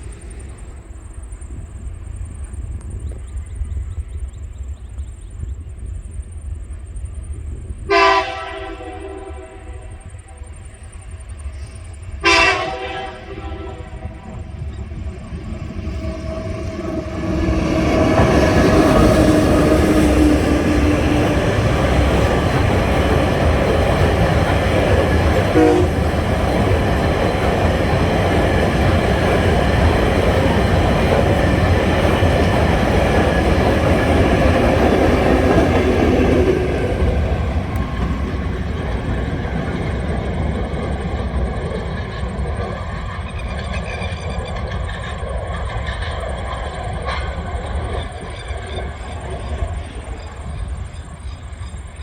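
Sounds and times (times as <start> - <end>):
diesel train passing: 0.0 - 52.0.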